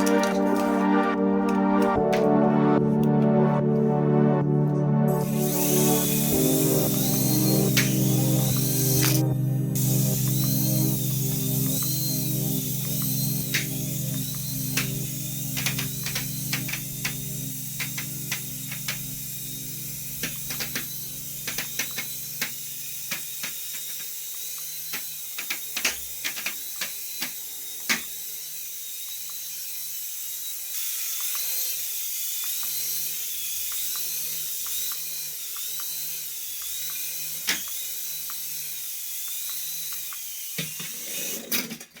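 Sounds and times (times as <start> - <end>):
wavering high-pitched whine: 5.1 - 24.9
small electric motor whirring: 5.2 - 41.9.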